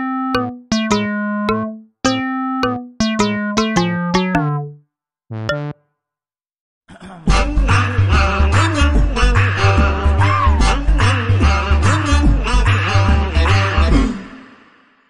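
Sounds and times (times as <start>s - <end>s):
busy music: 0.0s - 5.8s
synthesizer keyboard tune: 0.0s - 5.8s.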